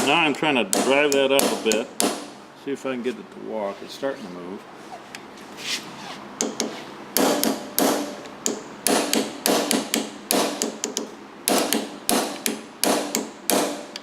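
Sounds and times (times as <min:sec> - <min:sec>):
hammer striking punch on metal: 0:00.0 - 0:02.4, 0:06.4 - 0:14.0.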